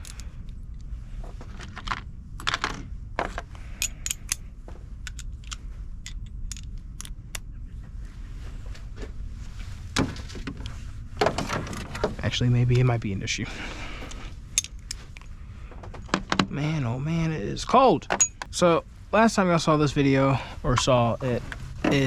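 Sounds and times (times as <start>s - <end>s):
metal tools clinking and clattering: 3.7s - 4.4s, 18.1s - 18.5s.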